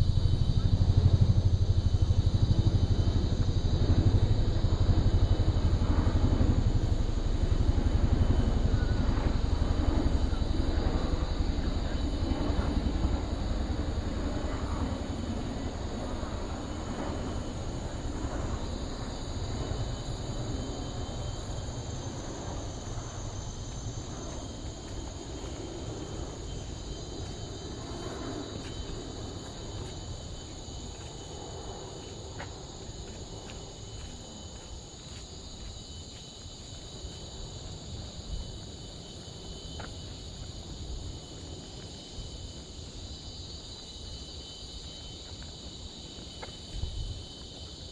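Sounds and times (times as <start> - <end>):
insects buzzing and trilling: 0.0 - 47.9.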